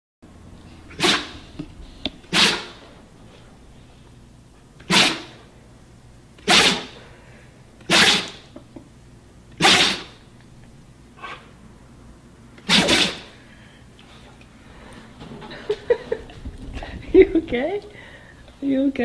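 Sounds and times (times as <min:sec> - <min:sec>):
person sneezing loudly: 0:04.9 - 0:05.4, 0:12.6 - 0:13.3.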